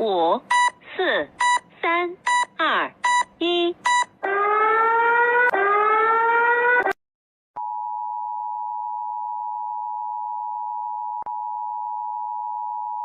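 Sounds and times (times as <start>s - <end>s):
rising alarm tone: 4.2s - 6.9s.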